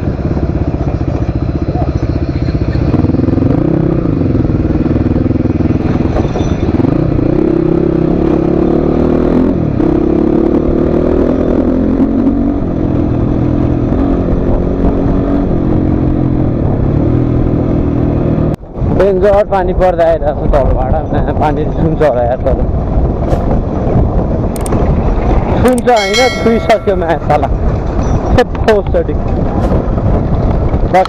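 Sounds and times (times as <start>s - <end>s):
motorcycle engine revving: 0.0s - 18.3s.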